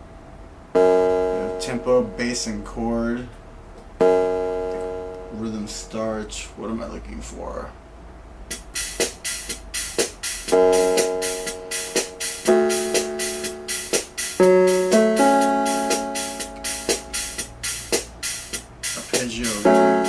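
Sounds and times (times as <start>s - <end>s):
sustained keyboard chords: 0.7s - 6.3s, 8.5s - 20.0s
drum machine beat: 8.5s - 20.0s.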